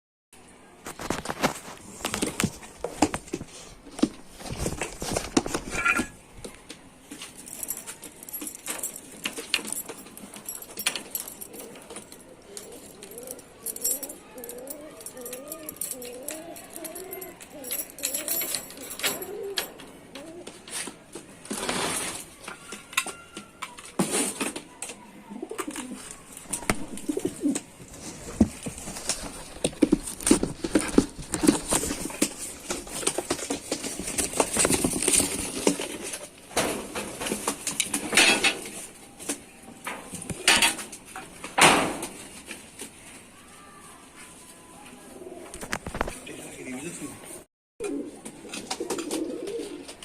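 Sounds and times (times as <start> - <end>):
pigeons cooing: 12.4 - 20.7, 25.3 - 26.2, 26.8 - 27.7, 47.8 - 50.0.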